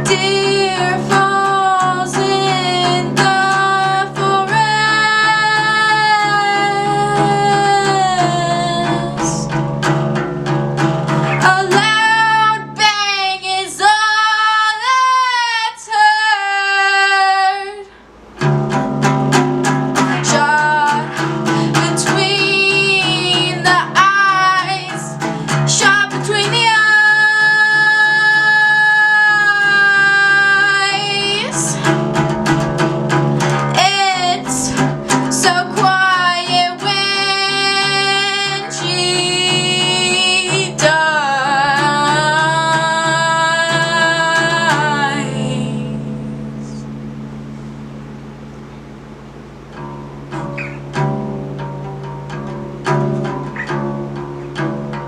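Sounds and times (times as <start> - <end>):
person singing: 0.0 - 9.7, 11.2 - 18.0, 20.0 - 32.6, 33.4 - 47.0
guitar-led backing music: 0.0 - 16.5, 17.1 - 55.0.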